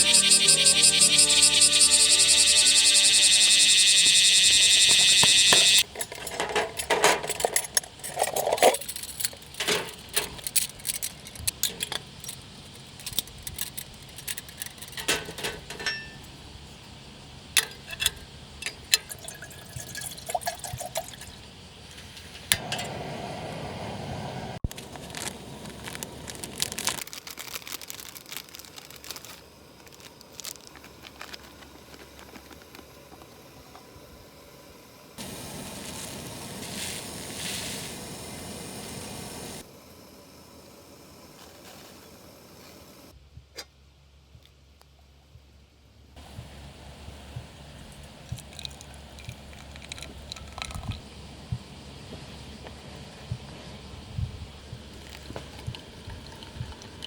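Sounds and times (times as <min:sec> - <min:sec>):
music: 0:00.0 - 0:03.8
objects clinking and knocking: 0:05.5 - 0:16.4
liquid pouring: 0:18.9 - 0:21.4, 0:48.0 - 0:51.0, 0:55.0 - 0:57.0.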